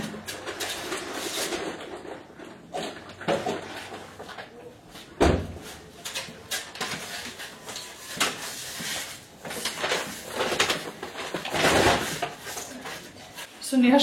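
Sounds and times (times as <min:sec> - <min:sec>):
rummaging among boxes: 0:00.0 - 0:13.5.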